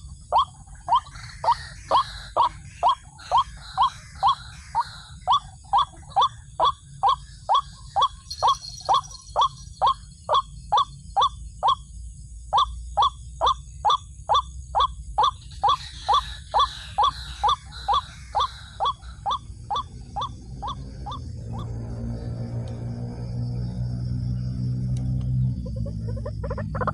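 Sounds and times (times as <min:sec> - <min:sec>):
rail bird calling: 0:00.0 - 0:11.9, 0:12.5 - 0:21.8.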